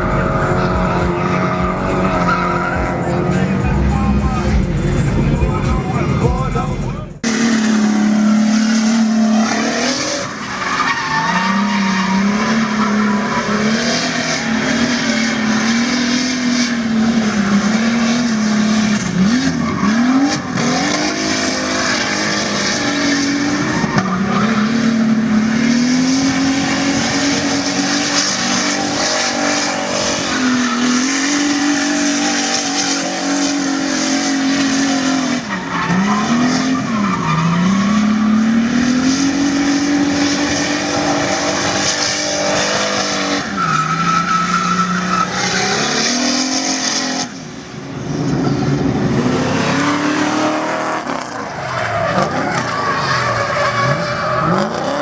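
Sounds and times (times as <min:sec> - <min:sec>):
car engine revving: 0:00.0 - 0:55.0
tyres squealing: 0:41.0 - 0:47.2.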